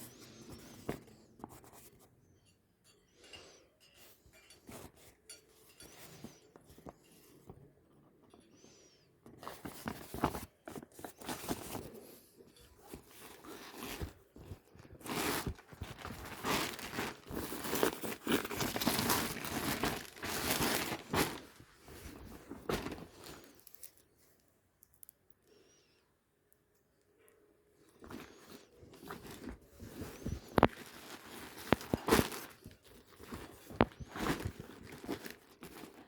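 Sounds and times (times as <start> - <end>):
packaging crinkling and rustling: 9.4 - 25.1, 27.9 - 36.0.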